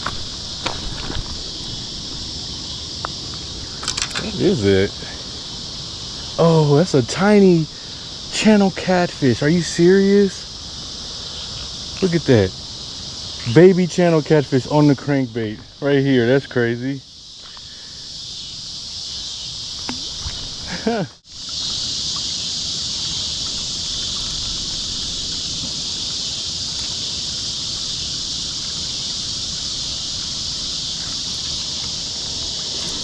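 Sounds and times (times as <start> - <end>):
insects buzzing: 0.0 - 33.0
low rushing noise: 22.5 - 28.2.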